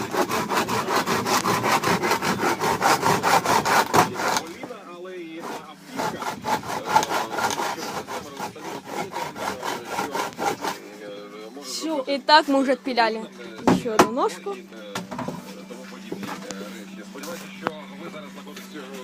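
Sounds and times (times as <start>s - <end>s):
hand saw cutting wood: 0.0s - 4.7s, 5.4s - 10.9s.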